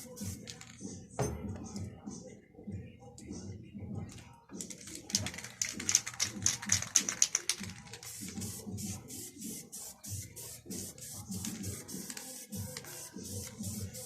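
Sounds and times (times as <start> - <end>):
percussive clicks like a shaker: 4.7 - 8.4.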